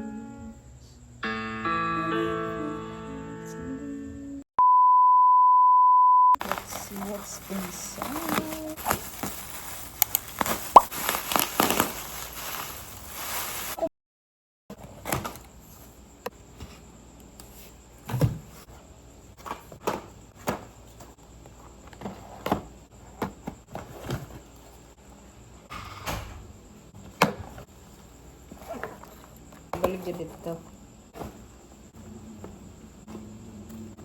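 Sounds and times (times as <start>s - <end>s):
small hard items clicking: 6.4s - 12.2s
packaging rustling and crinkling: 6.4s - 13.9s.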